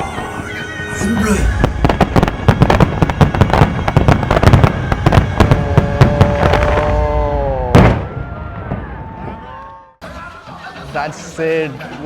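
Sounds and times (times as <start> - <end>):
fireworks bangs and crackles: 0.0 - 9.5
loud firework burst: 1.4 - 9.0.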